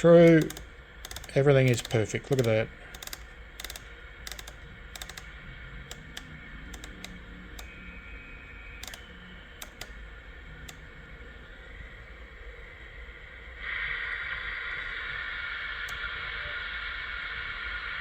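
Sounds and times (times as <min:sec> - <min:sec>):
radio channel knob clicking: 0:00.0 - 0:05.3, 0:05.9 - 0:07.8, 0:08.8 - 0:10.0.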